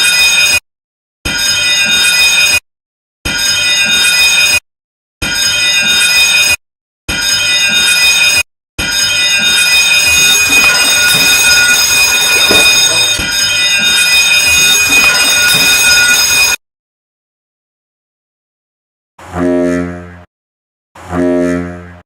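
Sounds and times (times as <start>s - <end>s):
high-pitched alarm tone: 8.9s - 16.6s.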